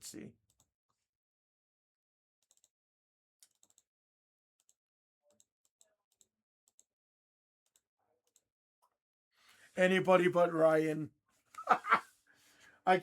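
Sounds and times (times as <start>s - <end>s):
keyboard and mouse clicks: 3.4s - 3.9s.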